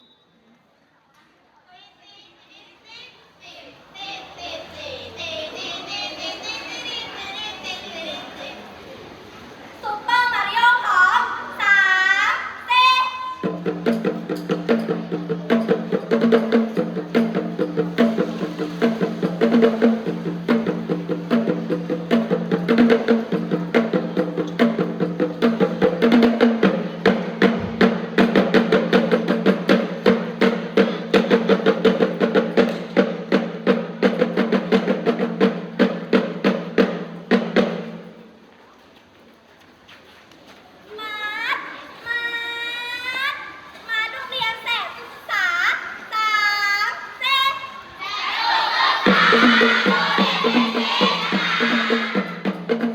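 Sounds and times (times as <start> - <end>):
fast knocking percussion beat: 13.4 - 38.0, 49.1 - 52.9.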